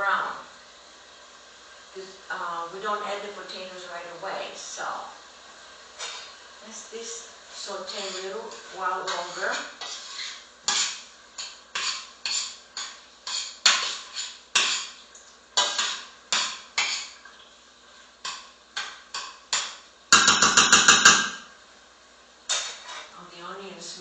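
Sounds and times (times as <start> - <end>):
utensil scraping frying pan: 5.8 - 17.2, 17.8 - 21.4, 22.5 - 23.2
clattering utensil: 8.0 - 14.9, 22.5 - 23.1.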